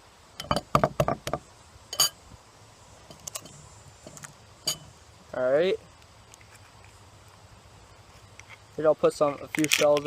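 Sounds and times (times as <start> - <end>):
bowl clinking: 1.9 - 2.2, 4.6 - 4.9.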